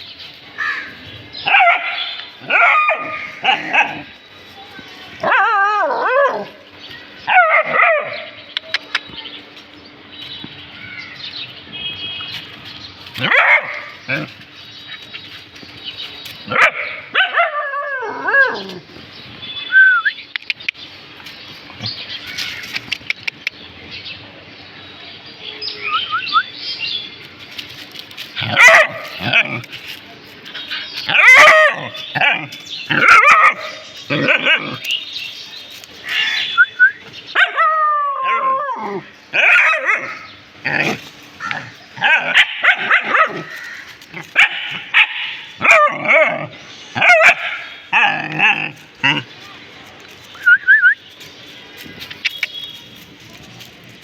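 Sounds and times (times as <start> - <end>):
dogs barking and yipping: 0.6 - 4.3, 5.2 - 8.9, 12.9 - 19.0, 27.6 - 49.4
dogs whining: 30.8 - 35.0.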